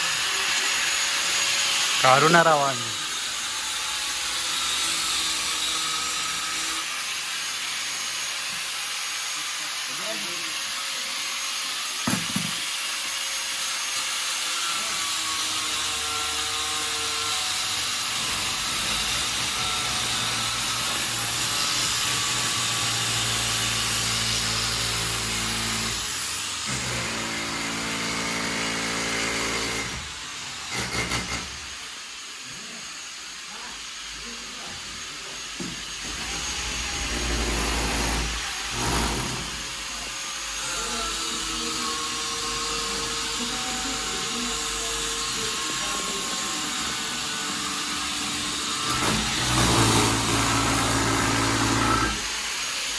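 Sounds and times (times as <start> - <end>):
power drill boring: 0.0 - 52.9.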